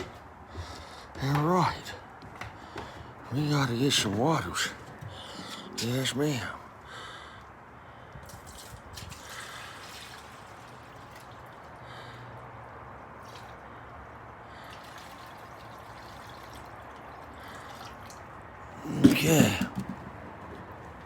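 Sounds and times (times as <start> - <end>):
water filling container: 8.4 - 11.7, 14.6 - 19.8.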